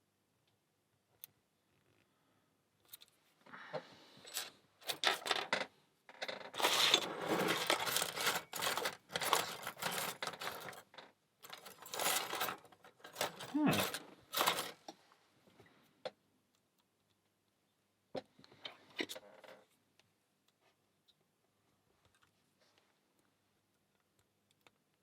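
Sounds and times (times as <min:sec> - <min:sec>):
metal lockpicks clinking: 0:06.2 - 0:14.8.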